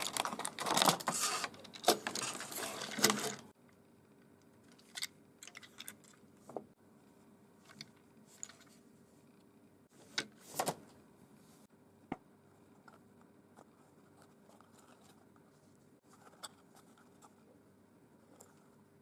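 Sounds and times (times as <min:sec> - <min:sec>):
faint steady hum: 0:00.0 - 0:19.0.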